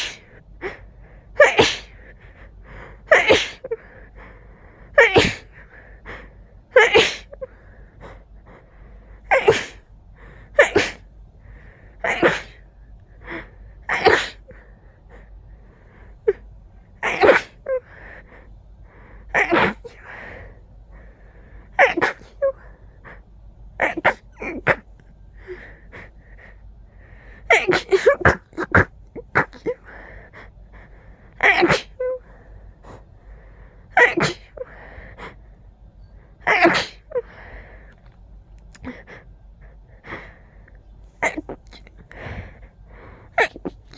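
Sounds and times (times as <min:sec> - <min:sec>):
person sneezing: 0:00.0 - 0:00.8, 0:01.4 - 0:02.1, 0:03.1 - 0:03.9, 0:05.0 - 0:05.8, 0:06.7 - 0:07.5, 0:09.3 - 0:09.8, 0:10.6 - 0:11.1, 0:12.0 - 0:12.6, 0:13.3 - 0:14.6, 0:17.0 - 0:17.9, 0:19.3 - 0:20.2, 0:21.7 - 0:22.7, 0:23.8 - 0:25.6, 0:27.4 - 0:30.1, 0:31.4 - 0:32.3, 0:33.9 - 0:34.8, 0:36.4 - 0:37.5, 0:41.2 - 0:43.9.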